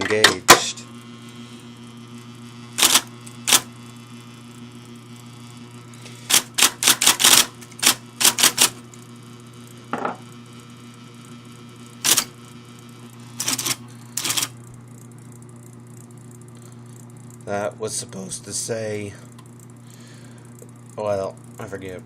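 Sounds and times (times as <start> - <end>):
steady low hum: 0.0 - 22.0
electric typewriter keystrokes: 2.8 - 3.7, 6.3 - 8.8, 12.0 - 12.4, 13.3 - 14.6.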